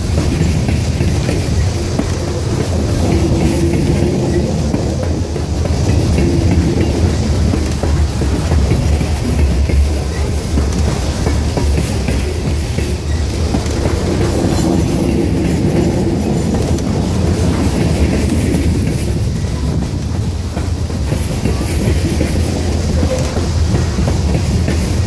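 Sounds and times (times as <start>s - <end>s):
steel wheels rumbling on rail: 0.0s - 25.0s
wheels clacking over rail joints: 0.0s - 25.0s.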